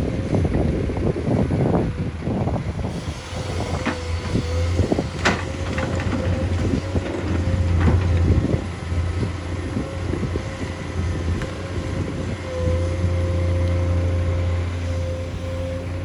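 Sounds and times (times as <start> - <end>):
diesel engine drone: 0.0 - 16.0
knocks and clanks: 3.2 - 8.7.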